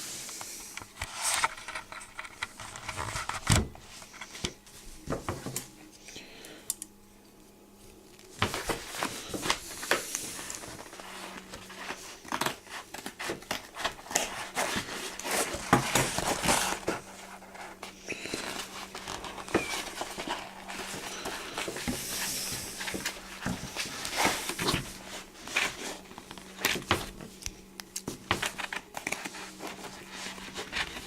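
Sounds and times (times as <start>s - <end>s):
packaging rustling and crinkling: 7.9s - 31.0s.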